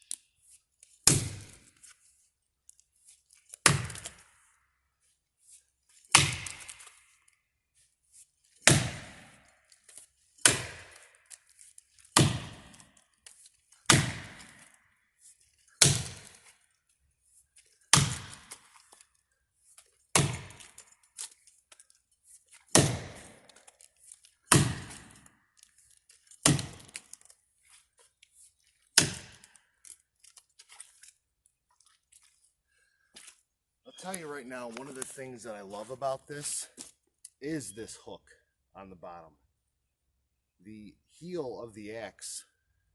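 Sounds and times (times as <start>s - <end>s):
axe chopping wood: 1.0s - 1.7s, 3.6s - 4.3s, 6.1s - 7.0s, 8.6s - 9.4s, 10.4s - 11.2s, 12.1s - 12.9s, 13.8s - 14.8s, 15.8s - 16.5s, 17.9s - 18.8s, 20.1s - 20.8s, 22.6s - 23.7s, 24.5s - 25.3s, 26.4s - 27.2s, 29.0s - 29.5s.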